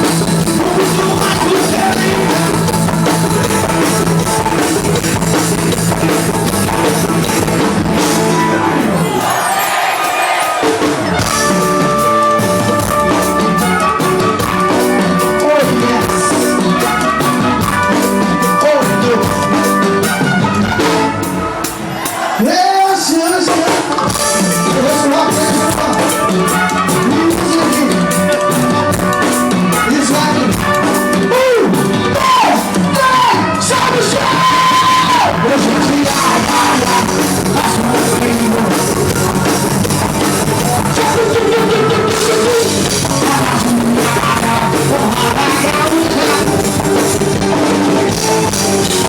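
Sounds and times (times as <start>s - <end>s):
person singing: 0.0s - 3.6s, 14.0s - 19.6s, 22.0s - 47.6s
drum kit beat: 0.0s - 49.0s.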